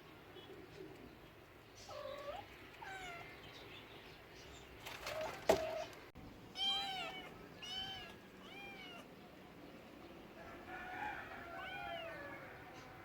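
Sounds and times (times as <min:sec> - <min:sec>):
cat meowing: 0:06.6 - 0:09.1.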